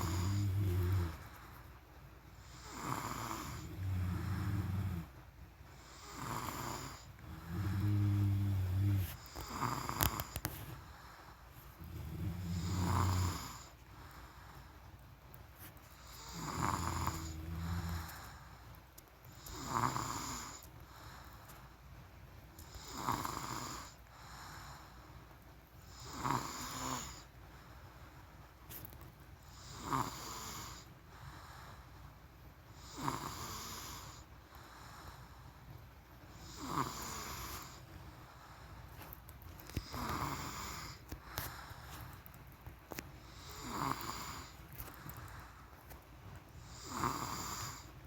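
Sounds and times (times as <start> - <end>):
person snoring: 0.0 - 1.4, 2.4 - 5.1, 5.8 - 10.5, 11.8 - 13.7, 16.1 - 18.3, 19.5 - 20.6, 36.4 - 37.8, 39.8 - 41.5, 43.3 - 44.6.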